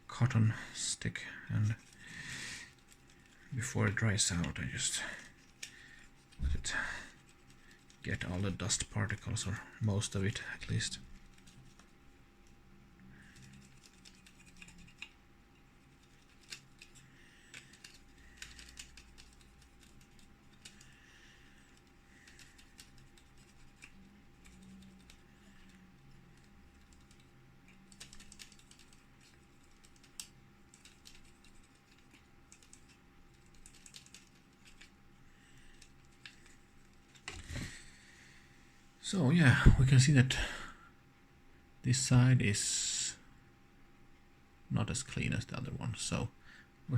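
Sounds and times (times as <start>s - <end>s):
cotton swab rubbing fan blades: 1.5s - 12.1s, 13.2s - 37.5s.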